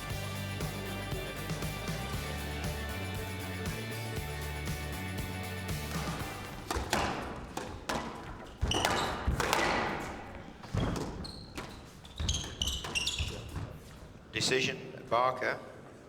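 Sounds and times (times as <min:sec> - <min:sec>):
background music: 0:00.0 - 0:07.6
ball thudding against walls: 0:05.8 - 0:14.0
squash ball cracking off rackets: 0:05.9 - 0:13.8
shoe squeaks on court floor: 0:06.6 - 0:14.2.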